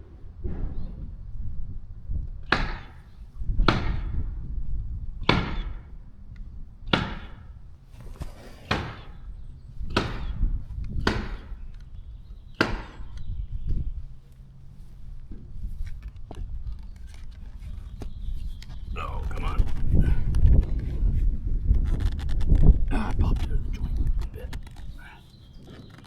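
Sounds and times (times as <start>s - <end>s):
sharp hard knocks: 2.4s - 4.3s, 5.2s - 5.9s, 6.9s - 7.6s, 8.7s - 9.2s, 9.8s - 11.6s, 12.6s - 13.2s.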